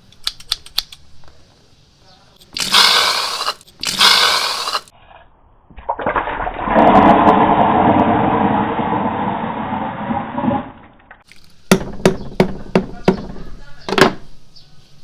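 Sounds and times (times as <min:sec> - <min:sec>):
liquid gushing and pouring: 0:05.8 - 0:11.5.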